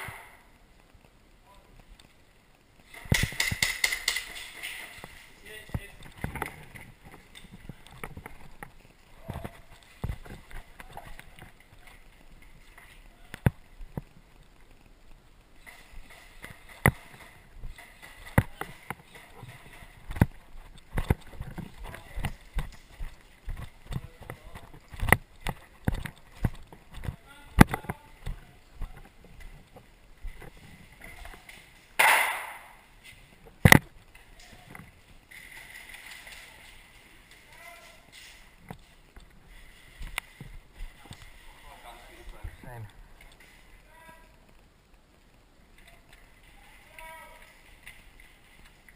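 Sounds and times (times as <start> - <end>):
faint shuffling steps: 4.4 - 32.0, 32.8 - 48.9
sharp double crack: 32.0 - 32.8.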